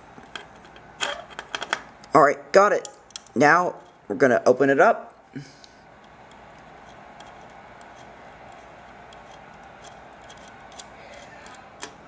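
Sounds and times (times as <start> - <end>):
low room hiss: 0.0 - 12.0
screwdriver clicks: 6.0 - 12.0.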